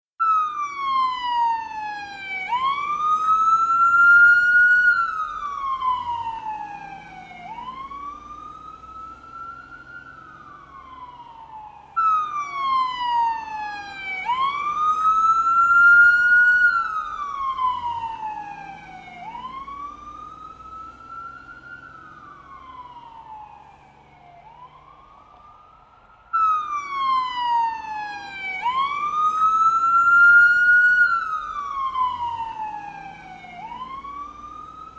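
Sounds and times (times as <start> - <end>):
police siren wailing: 0.2 - 34.9.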